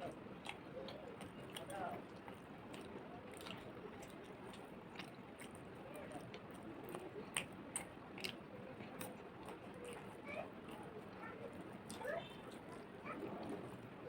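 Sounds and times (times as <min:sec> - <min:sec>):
person chewing food: 0:00.0 - 0:10.8.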